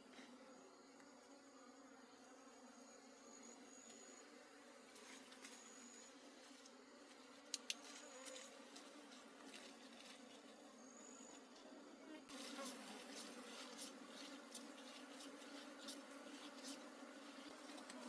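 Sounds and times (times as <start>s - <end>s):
bees buzzing: 7.9s - 18.0s.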